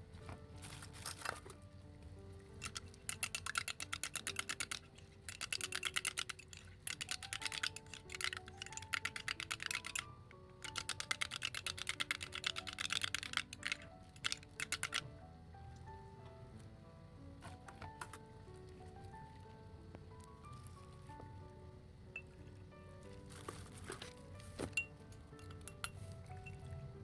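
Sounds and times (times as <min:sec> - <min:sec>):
background music simple melody: 0:00.0 - 0:27.0
rapid clicking: 0:02.4 - 0:15.2.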